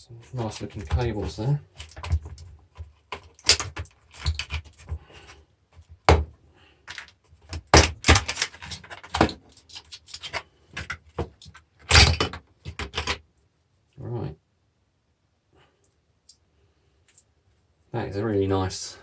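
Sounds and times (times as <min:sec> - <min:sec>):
metal and plastic parts clattering: 0:00.2 - 0:06.2, 0:06.8 - 0:13.2.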